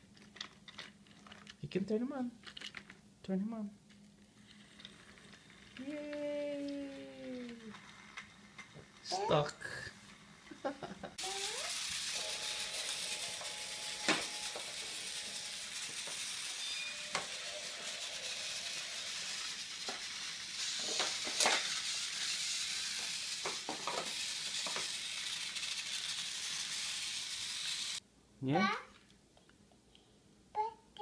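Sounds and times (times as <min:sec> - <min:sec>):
toy train motor whirring: 0:04.4 - 0:28.0.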